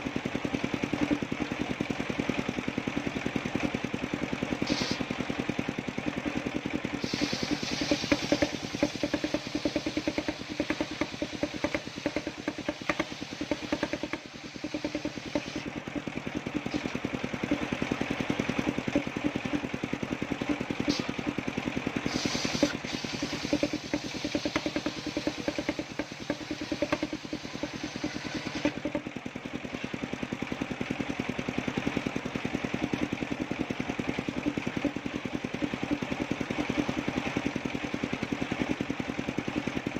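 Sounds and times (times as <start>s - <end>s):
sawmill engine running: 0.0s - 39.9s
short hissing: 4.6s - 5.1s, 7.0s - 9.8s, 20.9s - 21.1s, 22.0s - 23.6s.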